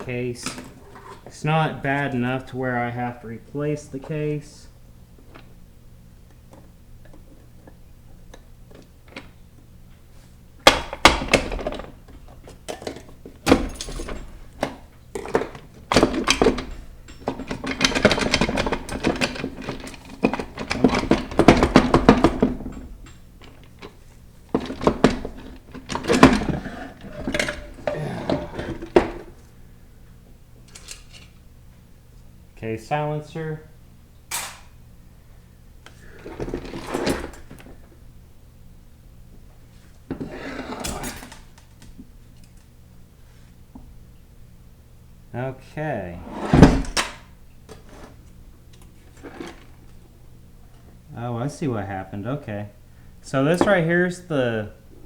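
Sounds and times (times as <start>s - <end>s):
metal parts clanking and rattling: 10.7s - 29.4s, 34.3s - 34.7s.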